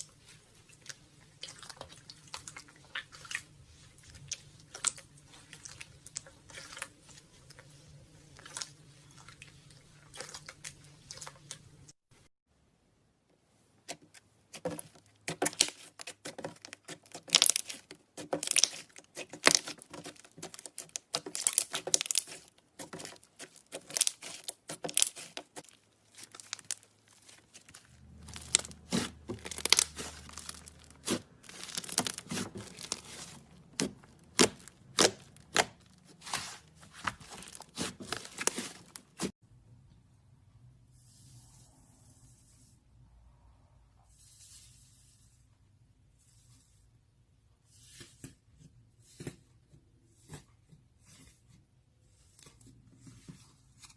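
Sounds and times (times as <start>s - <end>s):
slime crackling and popping: 14.6s - 39.3s.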